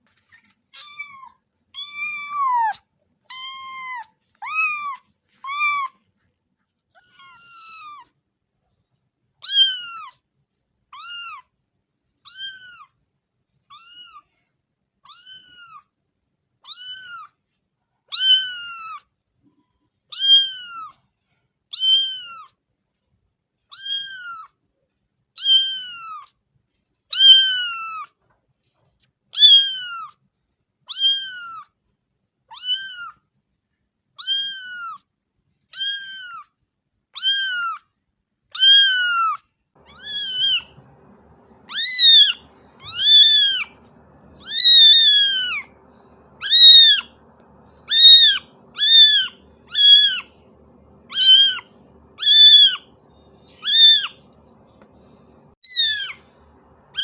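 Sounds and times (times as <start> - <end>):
cat meowing: 0.8 - 6.0, 7.0 - 8.1, 9.4 - 10.2, 11.0 - 11.5, 12.2 - 12.9, 13.7 - 14.3, 15.1 - 15.9, 16.6 - 17.3, 18.1 - 19.0, 20.1 - 21.0, 21.7 - 22.5, 23.7 - 24.5, 25.4 - 26.3, 27.1 - 28.1, 29.4 - 30.2, 30.9 - 31.7, 32.5 - 33.2, 34.2 - 35.0, 35.7 - 36.5, 37.2 - 37.8, 38.5 - 50.4, 51.0 - 54.4, 55.6 - 57.0.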